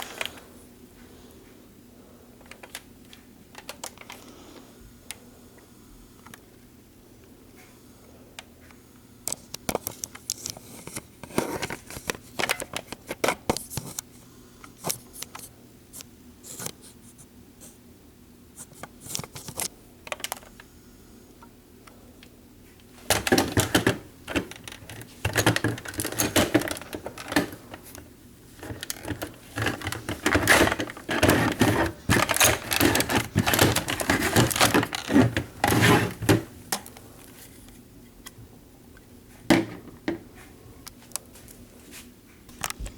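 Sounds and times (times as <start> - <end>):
scraping and rustling: 23.0 - 37.6
handling clicks and taps: 23.1 - 37.0.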